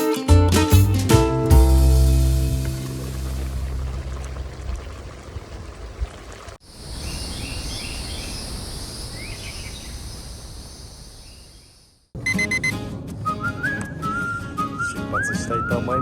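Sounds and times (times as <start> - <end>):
birds chirping: 6.8 - 12.5.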